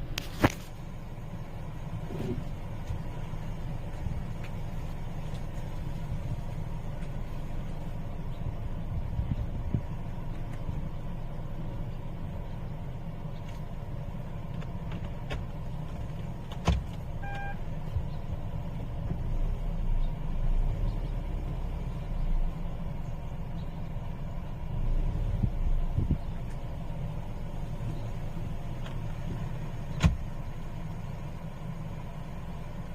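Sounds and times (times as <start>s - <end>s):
engine and road rumble: 0.0s - 32.9s
short electronic beep: 17.2s - 17.6s.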